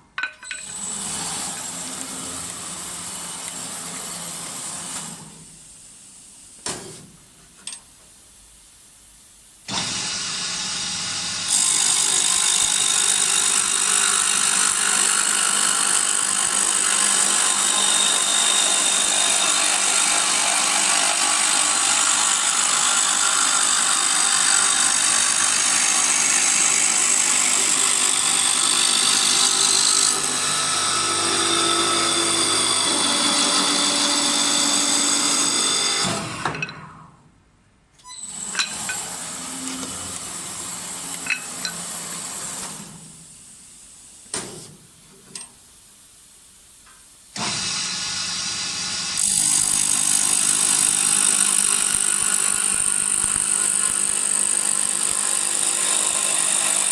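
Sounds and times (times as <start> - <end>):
wood-turning lathe cutting: 0.6 - 5.0, 9.7 - 36.5, 38.2 - 42.8, 47.4 - 56.9.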